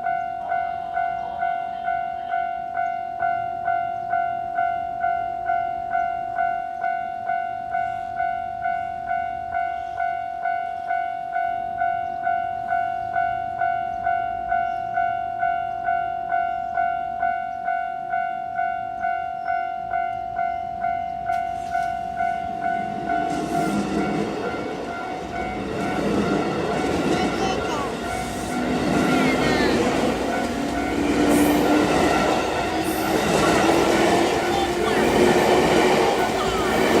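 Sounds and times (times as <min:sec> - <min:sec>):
level-crossing bell ringing: 0:00.0 - 0:37.0
train wheels running: 0:21.2 - 0:37.0.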